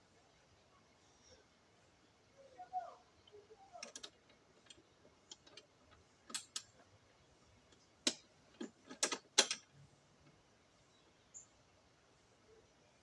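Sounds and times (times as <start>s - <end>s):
hard objects clicking and knocking: 3.8s - 6.8s, 8.0s - 9.7s.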